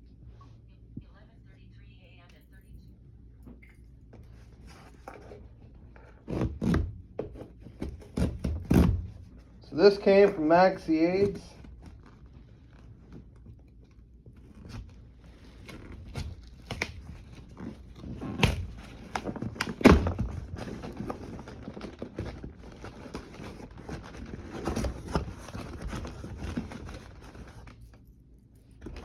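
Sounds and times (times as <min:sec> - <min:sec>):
cardboard package rustling and tearing: 0:05.1 - 0:28.0.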